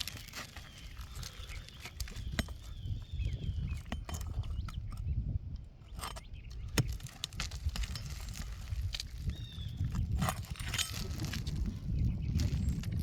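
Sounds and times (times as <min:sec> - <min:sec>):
hand tools clicking and scraping: 0:00.0 - 0:02.8, 0:03.7 - 0:05.1, 0:05.8 - 0:09.2, 0:09.8 - 0:11.6
wind rumble on microphone: 0:00.0 - 0:13.0.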